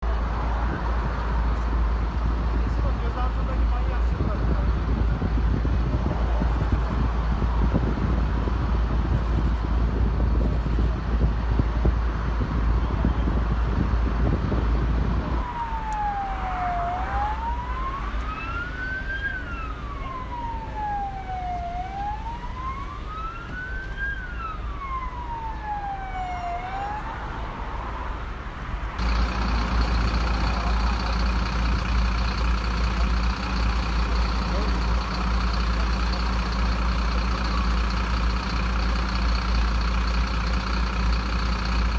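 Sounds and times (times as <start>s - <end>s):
fire engine siren wailing: 14.2s - 27.5s, 29.0s - 41.9s
engine drone: 29.0s - 41.9s
low steady rumble: 29.0s - 41.9s.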